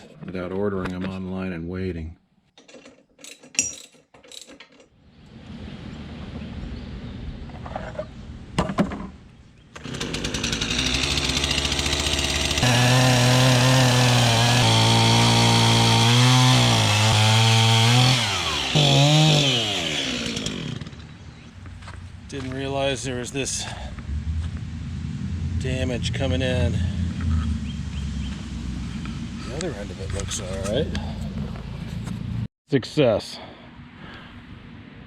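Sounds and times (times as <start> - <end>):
chainsaw cutting log: 9.8 - 21.1.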